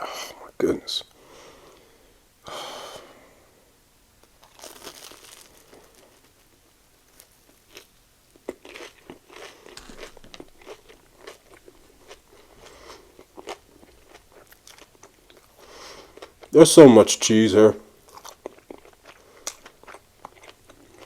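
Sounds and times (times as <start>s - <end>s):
crunching and chewing of fried food: 4.2s - 16.6s, 17.9s - 21.0s.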